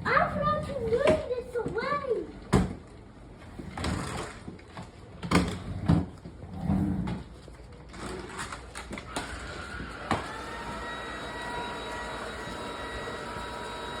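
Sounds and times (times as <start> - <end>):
vacuum cleaner whining: 7.9 - 14.0.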